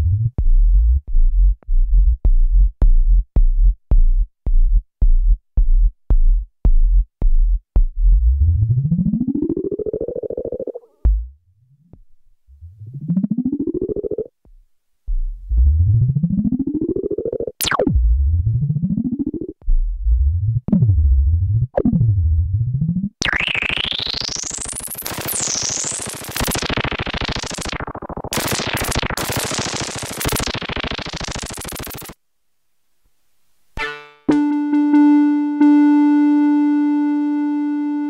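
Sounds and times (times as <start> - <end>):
synth zap: 17.6 - 18.0, 23.2 - 32.2.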